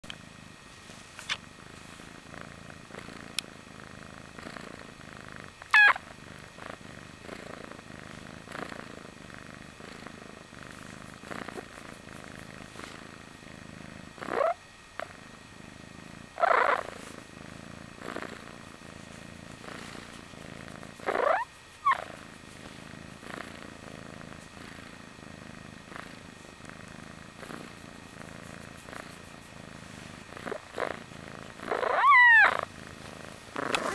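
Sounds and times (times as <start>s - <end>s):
kitten purring: 0.0s - 33.9s
kitten squeaky sliding-pitch noises: 31.8s - 32.6s.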